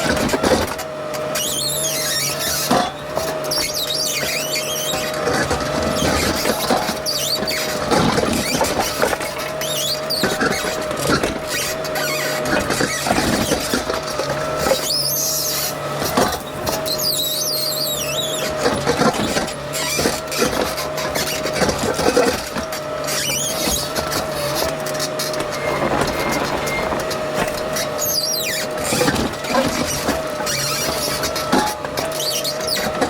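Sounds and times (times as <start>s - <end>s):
digger engine drone and whine: 0.0s - 33.0s
high squeals: 1.3s - 13.9s, 14.5s - 33.0s
bucket knocking and scraping gravel: 18.5s - 33.0s.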